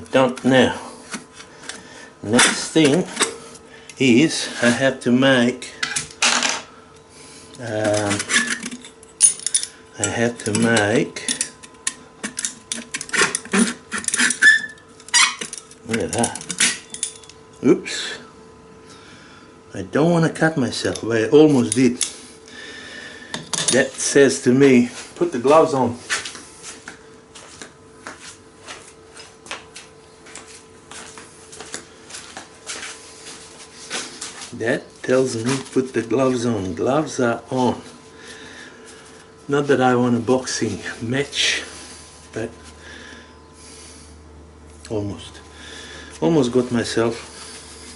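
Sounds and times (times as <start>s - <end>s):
faint steady hum: 0.0s - 47.9s
metal pieces clinking and scraping: 7.8s - 9.8s.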